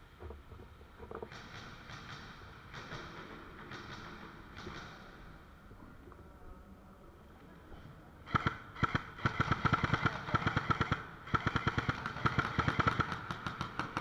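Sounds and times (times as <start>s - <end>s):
airsoft guns firing bursts: 1.3s - 5.2s, 8.2s - 14.0s.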